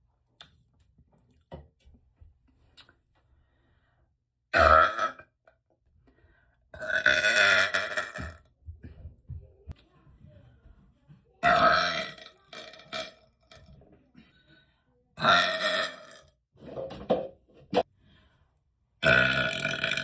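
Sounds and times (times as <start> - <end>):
person burping: 4.5 - 5.4, 6.8 - 8.4, 11.4 - 13.6, 15.2 - 16.3, 19.0 - 20.0.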